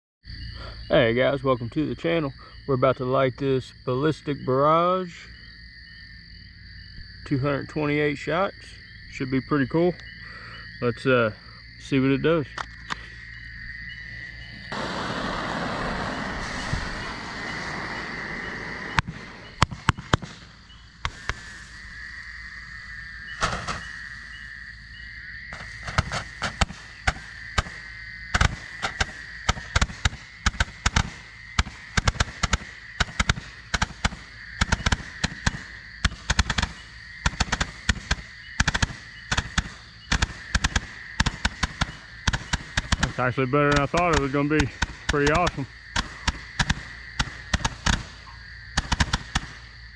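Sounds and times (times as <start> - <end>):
firework barrage of bangs: 14.7 - 21.8, 25.6 - 49.8
firework cake hissing: 14.7 - 21.8, 43.8 - 49.6.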